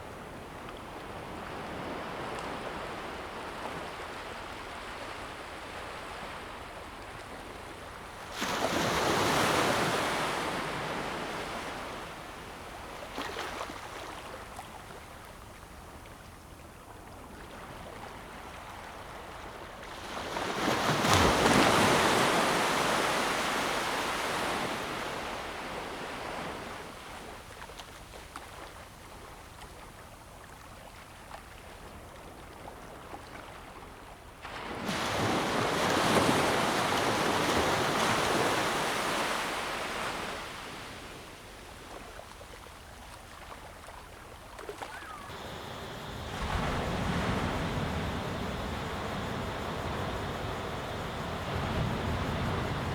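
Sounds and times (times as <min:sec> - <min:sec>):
sea waves breaking on shore: 0:19.4 - 0:26.9, 0:34.4 - 0:41.5, 0:44.5 - 0:52.9.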